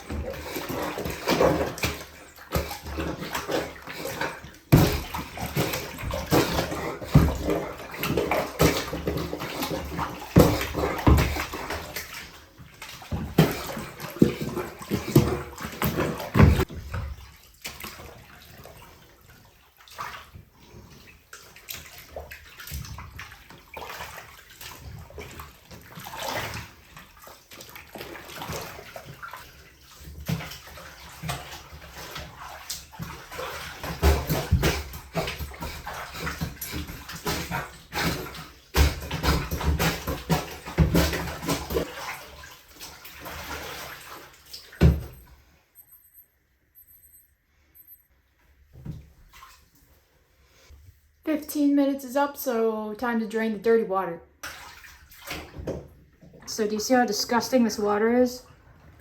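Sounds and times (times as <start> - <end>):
soapy water sloshing in bathtub: 0.0 - 45.7, 47.6 - 59.0.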